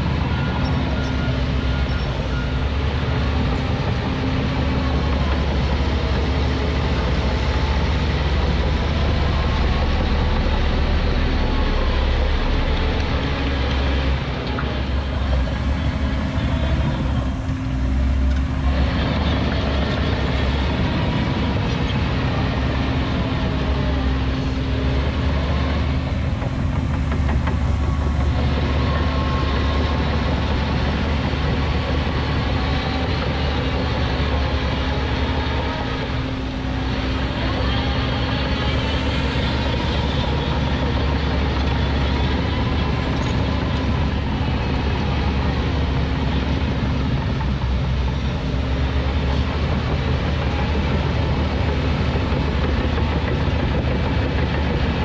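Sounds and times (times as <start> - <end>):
heavy diesel engine running: 0.0 - 55.0
steady whine: 4.2 - 55.0.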